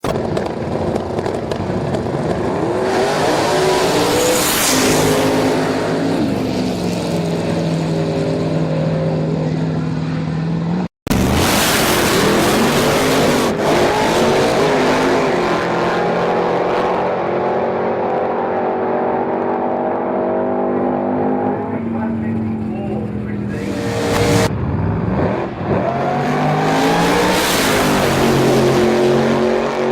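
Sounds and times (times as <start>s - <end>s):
racing car engine accelerating: 23.4s - 29.9s.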